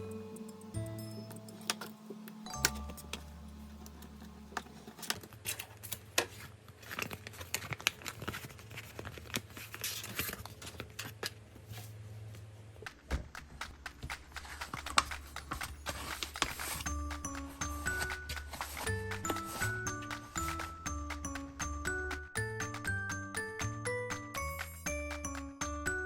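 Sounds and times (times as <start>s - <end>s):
paper crinkling and rustling: 3.9s - 12.0s, 14.0s - 20.9s.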